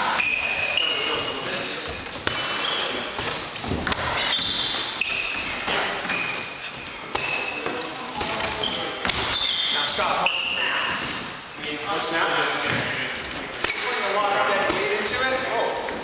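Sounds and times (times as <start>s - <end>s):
short high squeaks: 4.1s - 7.6s, 8.6s - 11.8s.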